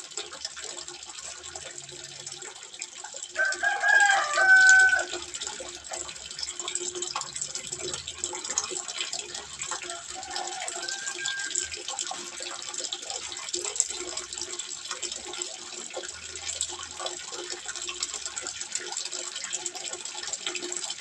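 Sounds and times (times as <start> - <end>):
water trickling into pond: 0.0 - 21.0
rooster crowing: 3.4 - 5.2, 9.9 - 11.8.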